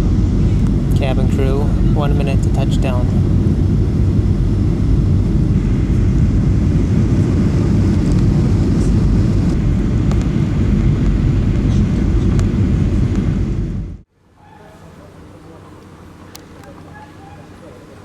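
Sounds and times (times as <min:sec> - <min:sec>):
rushing air: 0:00.0 - 0:14.1
jet engines rumbling in cabin: 0:00.0 - 0:18.0.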